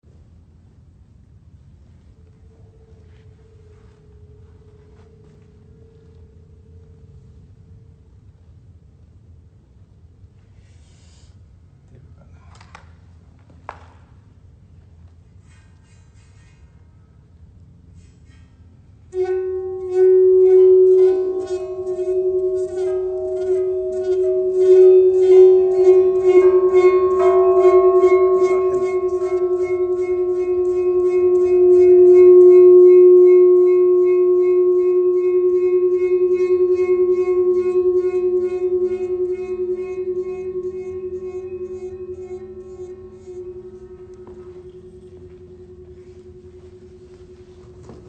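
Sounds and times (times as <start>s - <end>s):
sustained ringing musical tone: 2.1s - 8.5s, 19.1s - 48.0s.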